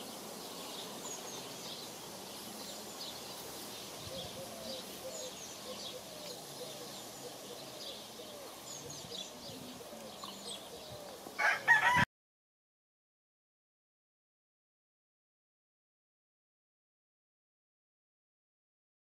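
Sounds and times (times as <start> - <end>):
small birds chirping: 0.0 - 11.4
rooster crowing: 11.4 - 12.1.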